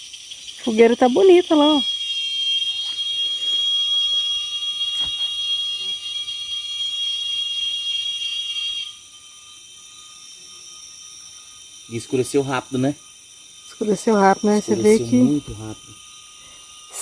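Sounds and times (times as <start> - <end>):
faint insect hum: 0.0 - 17.0
insects shrill drone: 0.0 - 17.0.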